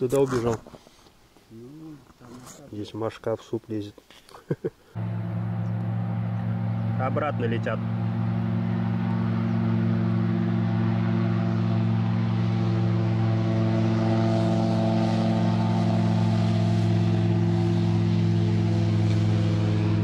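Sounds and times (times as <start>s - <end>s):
light aircraft engine droning: 5.0s - 20.0s.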